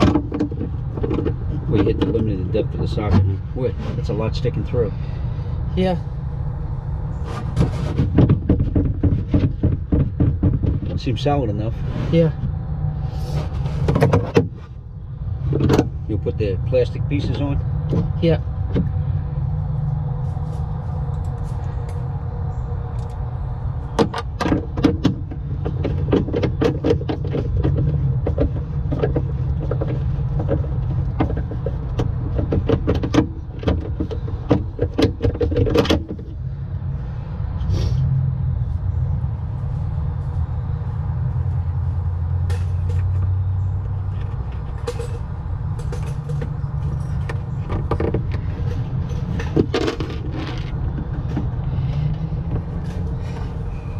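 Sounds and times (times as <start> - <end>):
low motor hum: 0.0 - 53.9
clicks and knocks of tools: 42.5 - 51.5.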